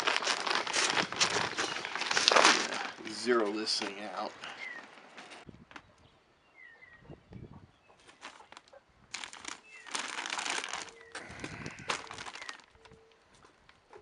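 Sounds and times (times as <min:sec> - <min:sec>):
bird chirps: 0:04.4 - 0:04.9, 0:05.8 - 0:08.7.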